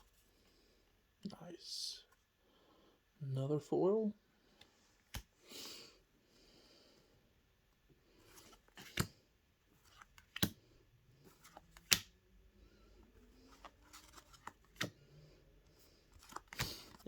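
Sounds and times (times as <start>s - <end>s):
cards rustling: 4.6s - 5.3s, 8.1s - 9.2s, 9.8s - 12.2s, 12.8s - 17.0s
cards snapping down: 5.0s - 5.3s, 8.4s - 9.1s, 9.9s - 10.6s, 11.4s - 12.1s, 16.2s - 17.0s.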